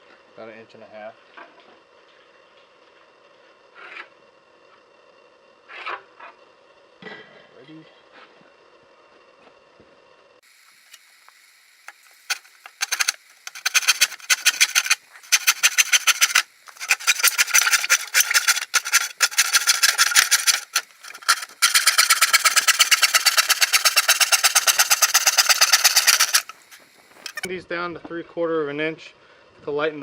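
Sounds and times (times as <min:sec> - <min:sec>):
hand saw cutting wood: 0:12.3 - 0:27.5.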